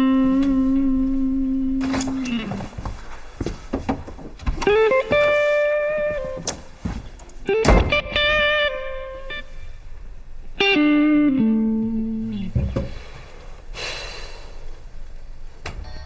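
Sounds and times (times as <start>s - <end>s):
plucked guitar notes: 7.5s - 9.6s, 10.6s - 12.7s.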